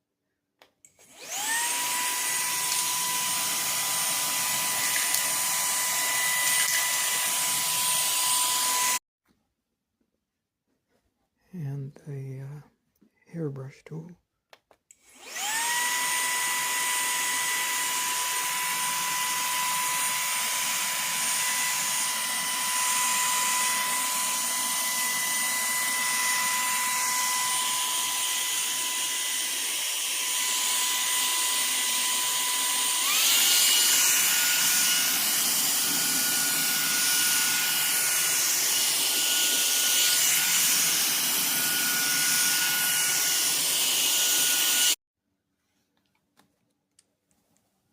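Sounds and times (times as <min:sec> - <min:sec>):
handheld vacuum motor whine: 0:00.9 - 0:09.0, 0:15.0 - 0:45.0.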